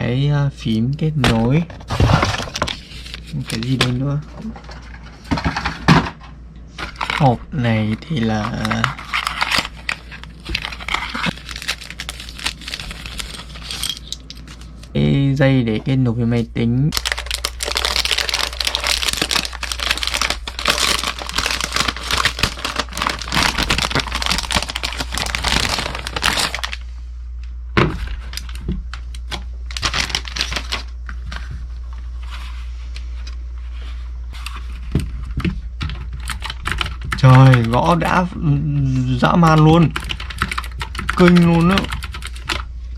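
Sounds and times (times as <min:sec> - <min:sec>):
packaging crinkling and tearing: 0:01.9 - 0:04.0, 0:06.8 - 0:14.9, 0:16.9 - 0:26.8, 0:28.0 - 0:32.0, 0:40.0 - 0:42.6.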